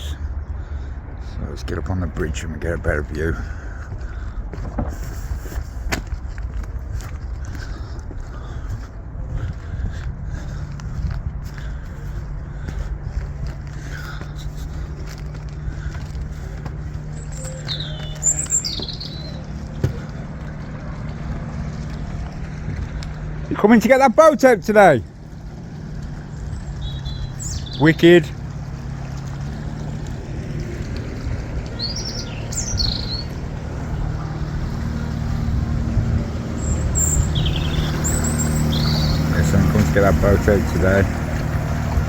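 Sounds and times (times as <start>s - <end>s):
boat engine humming: 0.0s - 42.0s
outboard motor droning: 0.0s - 42.0s
bird chirps: 17.0s - 20.1s, 26.4s - 28.1s, 31.6s - 33.9s, 36.5s - 40.0s.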